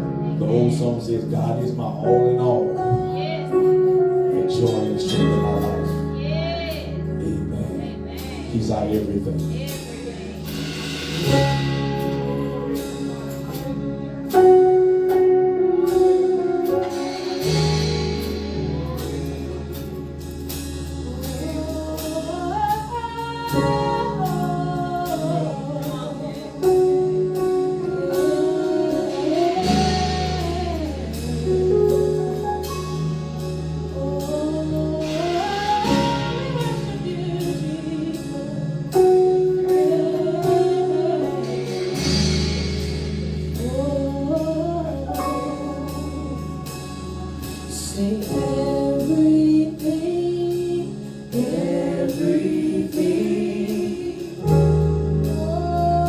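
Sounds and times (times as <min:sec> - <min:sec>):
gospel band playing: 0:00.0 - 0:56.0
person singing: 0:20.8 - 0:33.1, 0:33.8 - 0:56.0.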